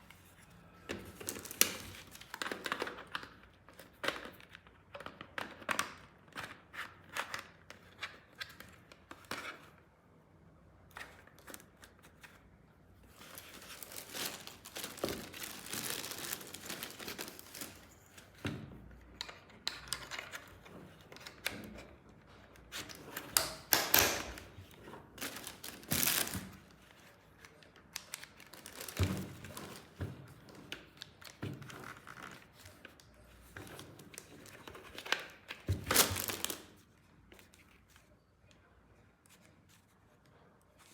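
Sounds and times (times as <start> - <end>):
plastic packaging crinkling: 1.1 - 3.1, 13.0 - 18.3, 24.3 - 30.0, 34.0 - 36.8.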